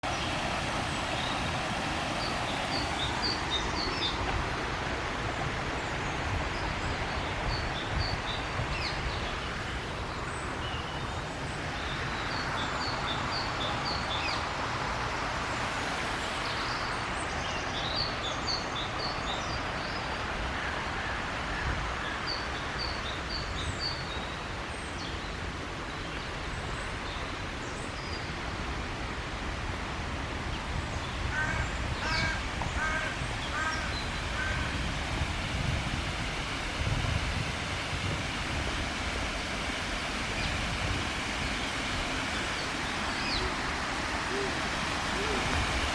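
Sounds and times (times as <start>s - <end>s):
songbird singing: 0.0s - 4.3s, 30.5s - 34.9s, 41.4s - 45.9s.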